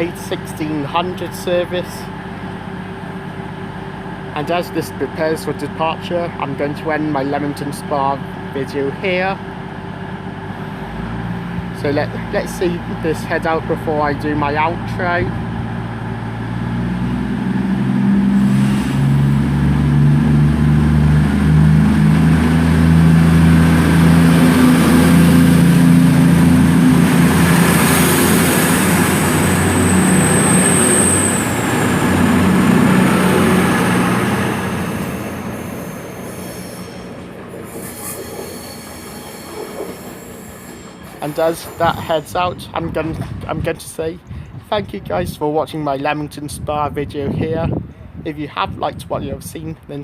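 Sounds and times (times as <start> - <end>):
diesel train engines running: 0.0 - 46.2
brief high squeal: 34.8 - 42.5.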